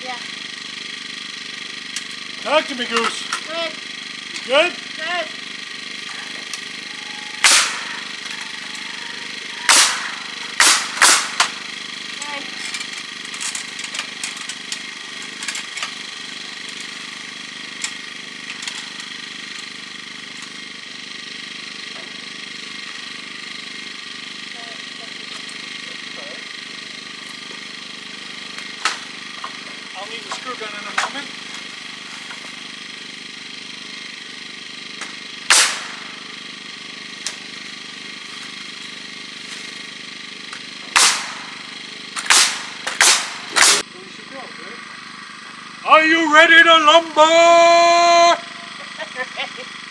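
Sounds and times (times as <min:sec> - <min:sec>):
engine idling: 0:00.0 - 0:49.9
nail gun shots: 0:04.1 - 0:21.1, 0:27.3 - 0:32.9, 0:35.0 - 0:39.8, 0:40.5 - 0:43.8
sharp clicks and knocks: 0:07.4 - 0:20.6, 0:28.4 - 0:32.7, 0:40.5 - 0:43.8.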